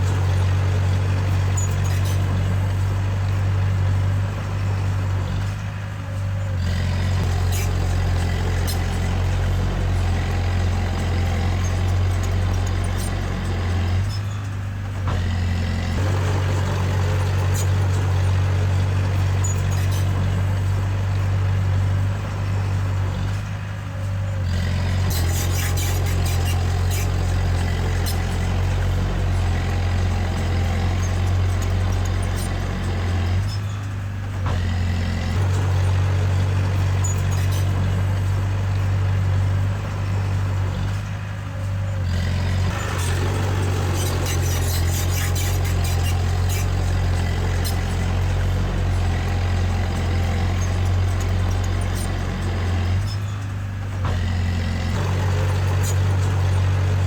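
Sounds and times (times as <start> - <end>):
bulldozer diesel engine: 0.0 - 57.0.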